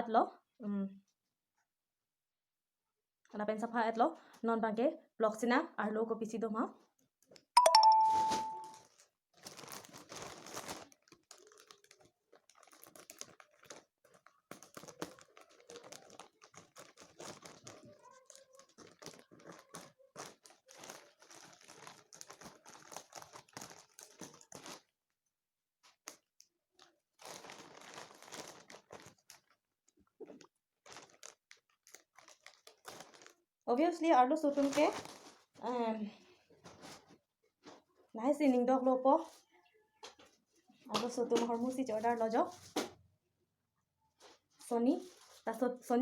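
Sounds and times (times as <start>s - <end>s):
plastic packaging crinkling: 7.8s - 25.0s, 25.8s - 33.5s, 34.4s - 35.6s, 36.6s - 37.8s, 45.0s - 45.5s.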